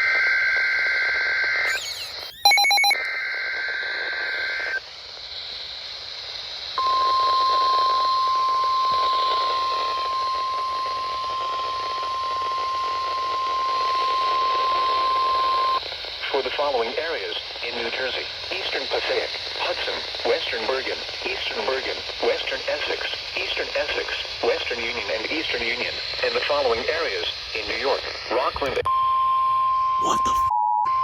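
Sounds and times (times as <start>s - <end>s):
steady alert tone: 1.7s - 3.0s
two-tone data chatter: 1.7s - 3.1s
radio hiss: 14.3s - 28.9s, 30.0s - 30.5s.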